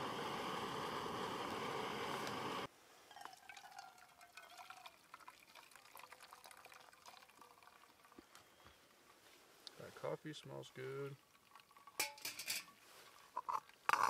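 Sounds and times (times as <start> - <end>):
steady hiss: 0.0 - 3.0
liquid trickling: 3.1 - 8.6, 10.6 - 14.0.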